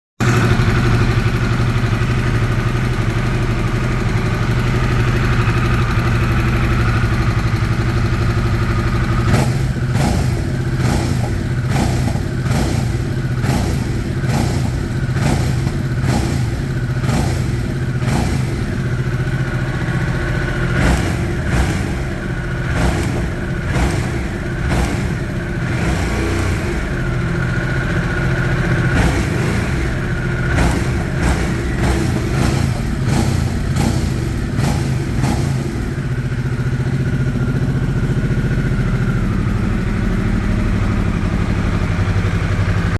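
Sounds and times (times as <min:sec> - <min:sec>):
motorcycle engine idling: 0:00.2 - 0:42.9
motorcycle throttle blips: 0:00.2 - 0:42.9.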